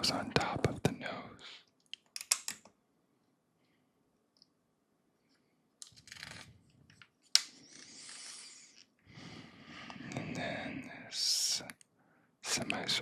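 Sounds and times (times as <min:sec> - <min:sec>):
plastic pieces clicking together: 0:01.9 - 0:02.7.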